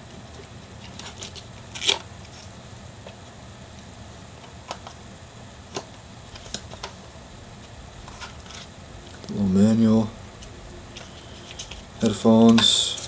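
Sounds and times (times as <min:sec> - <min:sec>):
cardboard and plastic packaging rustling: 0:00.8 - 0:02.5, 0:05.7 - 0:07.1, 0:08.0 - 0:09.4, 0:10.4 - 0:13.0.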